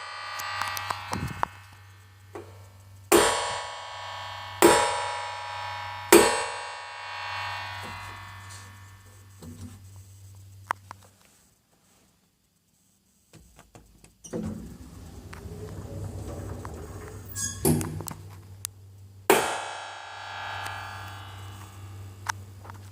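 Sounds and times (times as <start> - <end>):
steady low hum: 0.0 - 22.9
small clicks: 0.3 - 2.5.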